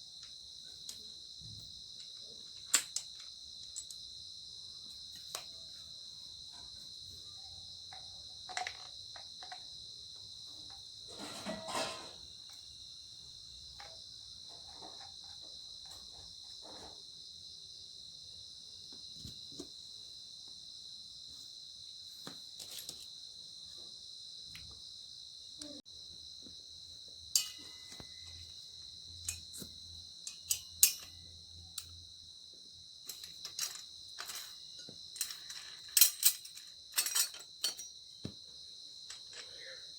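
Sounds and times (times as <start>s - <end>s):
crickets chirring: 0.0s - 39.9s
handling clicks and knocks: 7.9s - 9.6s
sharp clinks: 27.3s - 28.5s, 30.2s - 31.9s.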